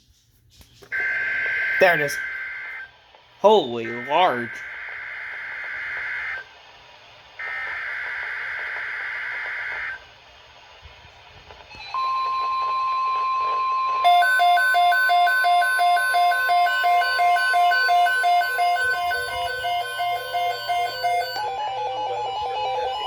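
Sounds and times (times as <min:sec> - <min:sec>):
steady alarm tone: 0:01.0 - 0:02.8, 0:03.4 - 0:06.4, 0:14.0 - 0:23.0
pulsing two-pitch beep: 0:14.1 - 0:21.6.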